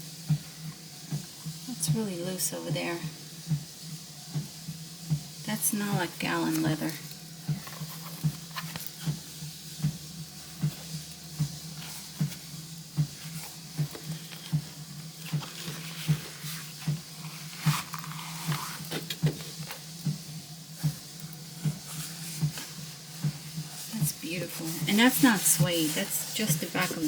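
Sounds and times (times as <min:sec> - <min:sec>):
leather notebook cover rustling: 0:06.4 - 0:09.2, 0:13.0 - 0:19.9, 0:24.1 - 0:27.0.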